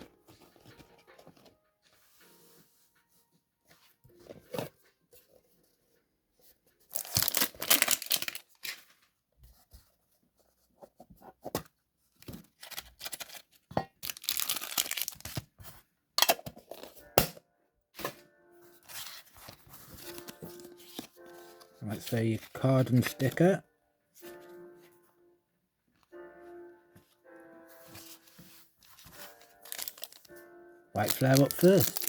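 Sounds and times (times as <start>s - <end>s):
plastic shrink-wrap tearing: 6.9s - 8.6s, 14.0s - 15.4s, 29.6s - 30.3s, 31.0s - 32.0s.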